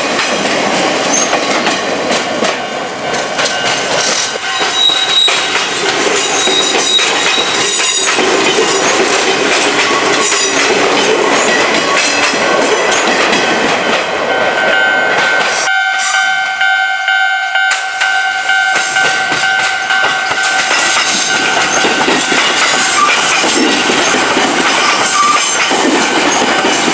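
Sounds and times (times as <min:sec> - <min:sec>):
train wheels clattering on rails: 0:00.0 - 0:15.7, 0:17.6 - 0:26.9.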